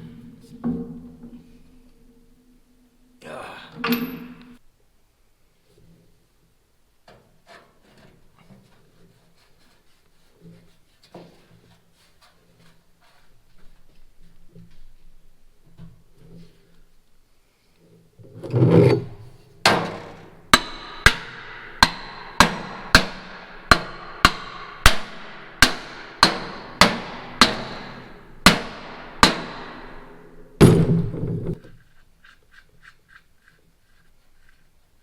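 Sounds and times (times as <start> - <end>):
rough scraping clatter: 18.2 - 20.9
hammer striking metal: 19.6 - 31.5.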